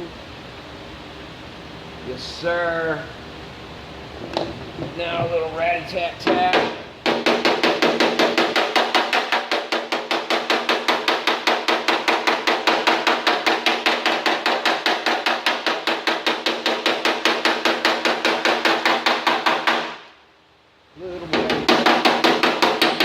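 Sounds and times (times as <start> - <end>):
hammer tapping on sheet steel: 6.2 - 20.1, 21.2 - 23.0.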